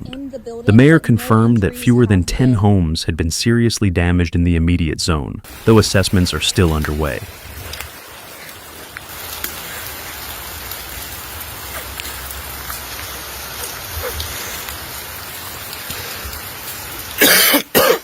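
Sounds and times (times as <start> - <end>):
steady rain falling: 5.5 - 18.0.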